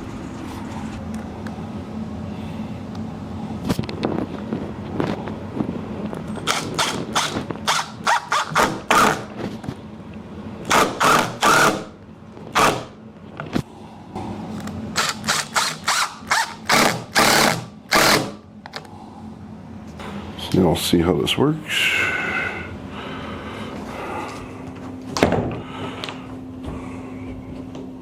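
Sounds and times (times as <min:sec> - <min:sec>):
power driver driving screws: 0:06.4 - 0:09.2, 0:15.0 - 0:18.4.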